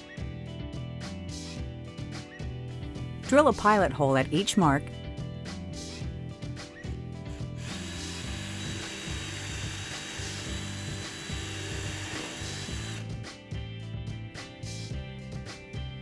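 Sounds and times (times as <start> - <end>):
power drill drilling: 7.6 - 13.1.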